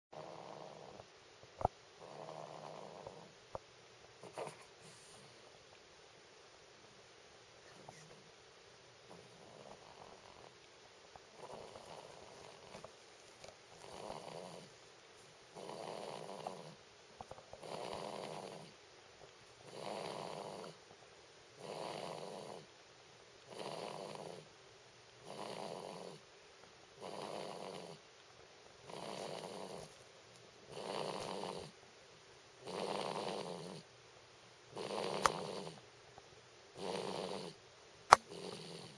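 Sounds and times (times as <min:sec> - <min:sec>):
rhythmic snoring: 0:00.2 - 0:03.4, 0:09.1 - 0:10.5, 0:11.3 - 0:12.9, 0:13.8 - 0:14.8, 0:15.5 - 0:16.8, 0:17.5 - 0:18.8, 0:19.6 - 0:20.8, 0:21.6 - 0:22.7, 0:23.5 - 0:24.5, 0:25.2 - 0:26.2, 0:27.0 - 0:28.0, 0:28.8 - 0:29.9, 0:30.7 - 0:31.8, 0:32.6 - 0:33.9, 0:34.7 - 0:35.8, 0:36.8 - 0:38.9.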